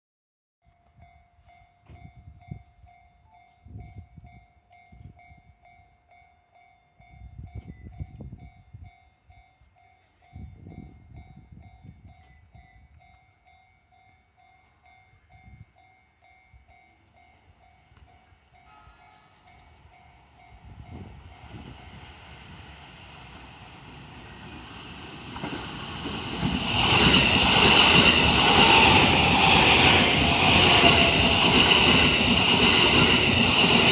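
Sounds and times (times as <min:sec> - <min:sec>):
approaching train rail noise: 0:17.0 - 0:33.9.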